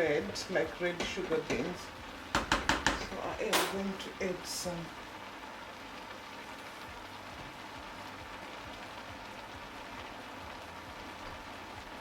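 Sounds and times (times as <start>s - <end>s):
food sizzling in a pot: 0.0s - 12.0s.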